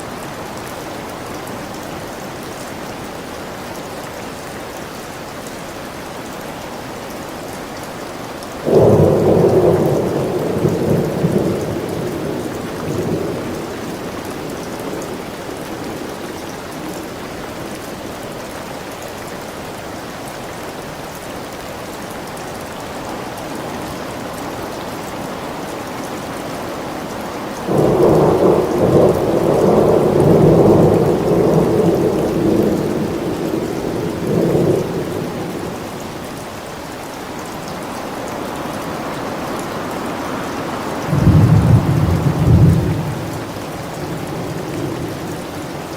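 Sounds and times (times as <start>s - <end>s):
steady rain falling: 0.0s - 45.9s
thunder rumbling: 8.7s - 14.2s, 27.7s - 35.8s, 41.0s - 45.9s.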